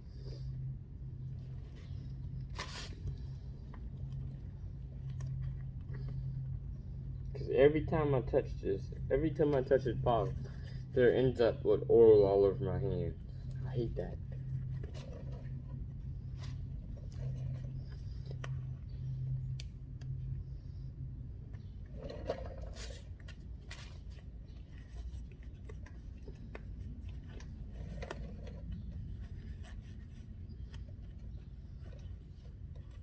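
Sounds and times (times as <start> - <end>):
low steady hum: 0.0 - 33.0
handling scrapes and clicks: 13.1 - 33.0.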